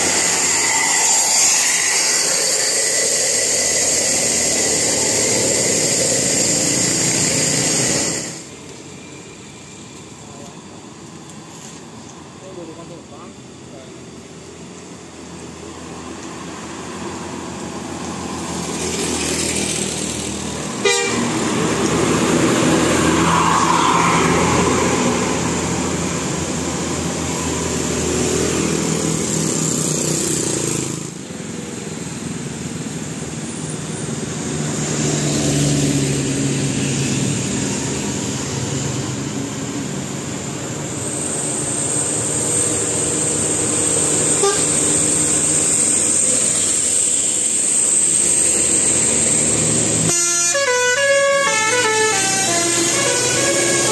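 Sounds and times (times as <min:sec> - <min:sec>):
running vehicle noise: 0:00.0 - 0:53.9
bus horn with changing tones: 0:20.8 - 0:21.6, 0:44.2 - 0:45.1, 0:49.9 - 0:53.9.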